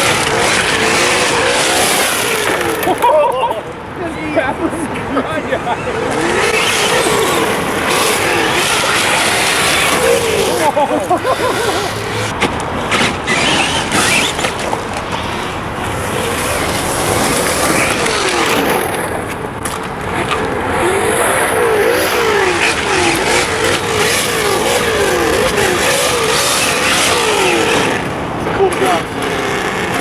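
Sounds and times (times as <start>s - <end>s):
tyres rushing on gravel: 0.0s - 30.0s
electric motor whine: 6.1s - 12.3s, 20.2s - 28.2s.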